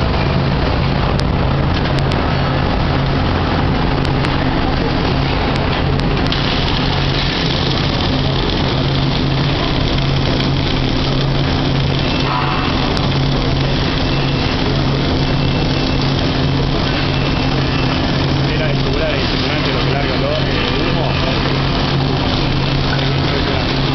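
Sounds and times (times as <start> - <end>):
welding machine hum: 0.0 - 23.9
welding arc hissing: 6.1 - 23.9.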